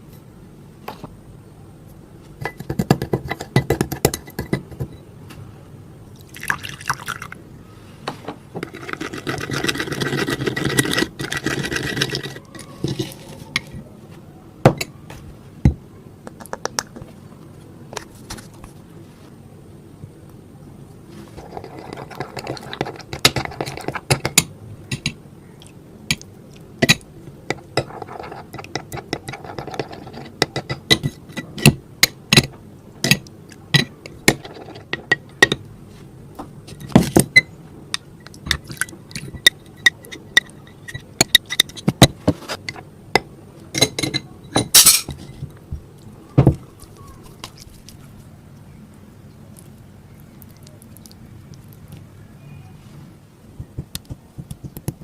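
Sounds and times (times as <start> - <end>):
utensil scraping a dish: 8.6 - 13.8, 21.2 - 24.1, 27.5 - 31.7.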